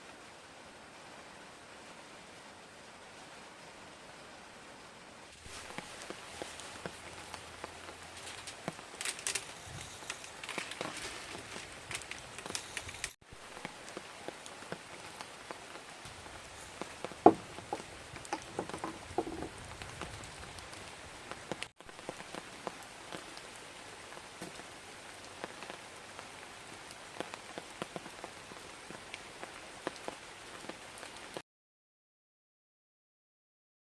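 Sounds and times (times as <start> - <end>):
rain hissing: 0.0 - 31.4.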